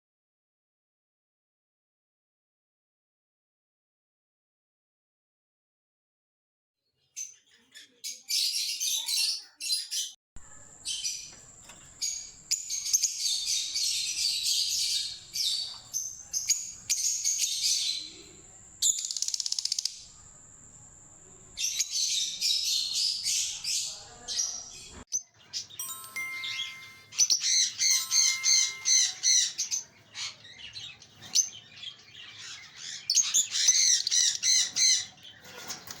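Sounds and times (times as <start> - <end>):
lovebirds chirping and squeaking: 7.0 - 10.2, 21.6 - 36.0.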